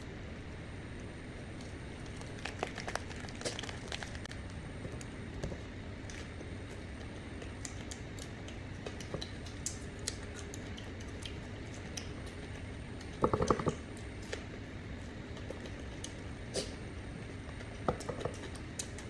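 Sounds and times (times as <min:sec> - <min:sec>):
steady low hum: 0:00.0 - 0:19.0
utensils clicking while eating: 0:02.1 - 0:04.3, 0:07.4 - 0:14.4, 0:17.9 - 0:19.0.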